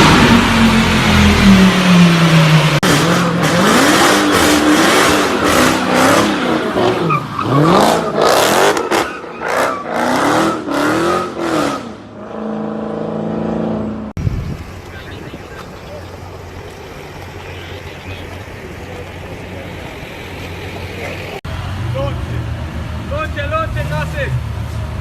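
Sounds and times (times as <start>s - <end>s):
sports car engine revving: 0.0s - 14.1s.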